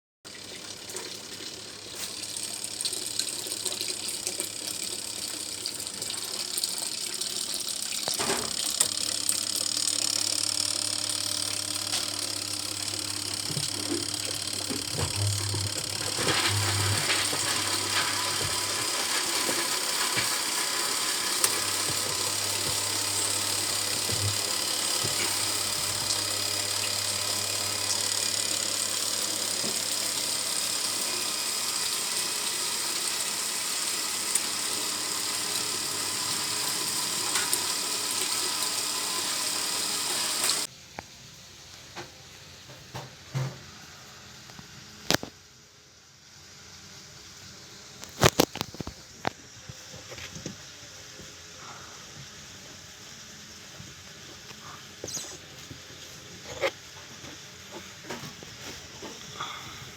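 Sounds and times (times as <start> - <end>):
washing machine motor humming: 0.3 - 40.7.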